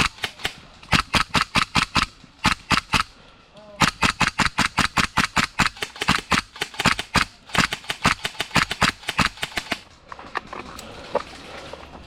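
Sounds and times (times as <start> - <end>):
airsoft guns firing: 0.0 - 3.2, 3.8 - 9.9.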